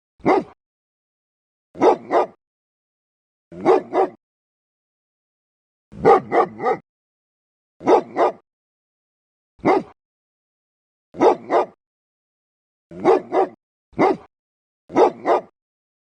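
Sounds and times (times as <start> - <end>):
dog barking: 0.2 - 0.6, 1.8 - 2.4, 3.5 - 4.2, 6.0 - 6.8, 7.8 - 8.4, 9.6 - 10.0, 11.2 - 11.8, 12.9 - 14.3, 14.9 - 15.6.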